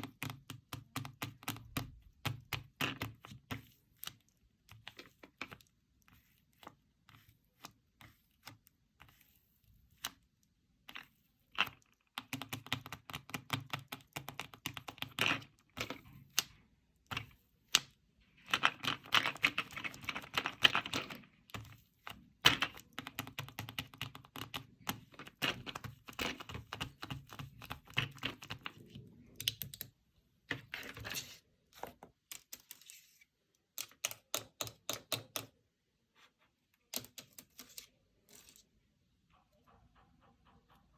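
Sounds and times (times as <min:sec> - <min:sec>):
fingers tapping on paper board: 0:00.0 - 0:04.2, 0:11.6 - 0:16.0, 0:18.6 - 0:28.8, 0:33.8 - 0:35.6.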